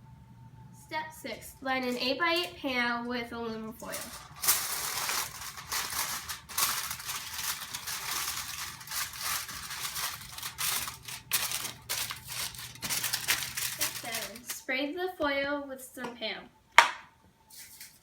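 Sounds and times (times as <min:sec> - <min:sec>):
aluminum foil crinkling: 0:01.7 - 0:14.7, 0:17.5 - 0:18.0.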